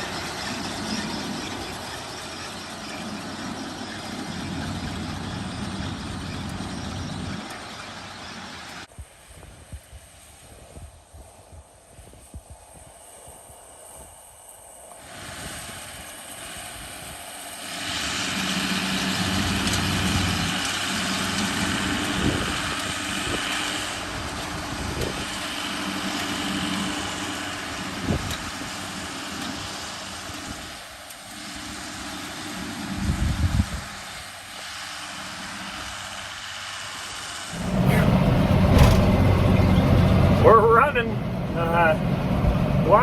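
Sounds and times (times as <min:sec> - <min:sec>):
baler machinery whirring: 0:00.0 - 0:08.9, 0:14.8 - 0:43.0
tractor engine running: 0:00.0 - 0:08.9, 0:15.0 - 0:43.0
heavy low rumble: 0:37.5 - 0:43.0.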